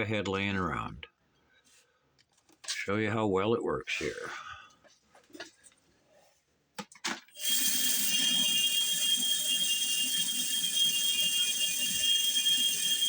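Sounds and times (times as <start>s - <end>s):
belt sander motor whine: 7.4s - 13.0s.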